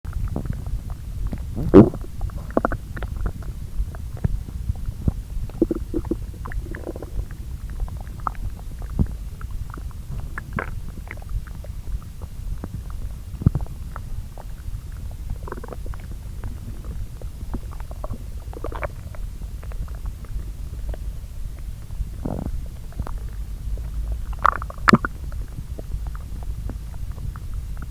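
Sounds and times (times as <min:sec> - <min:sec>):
low rumble: 0:00.2 - 0:27.9
intestines churning: 0:00.4 - 0:27.9
short gurgles: 0:01.4 - 0:03.1, 0:05.1 - 0:07.4.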